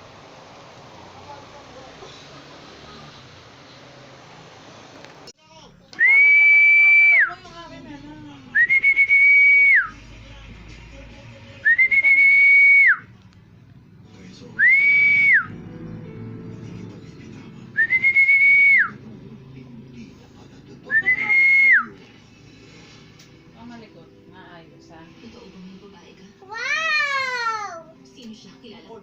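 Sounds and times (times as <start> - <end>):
loud high whistling: 11.6 - 13.1, 14.6 - 15.6, 17.8 - 19.0, 20.9 - 22.0.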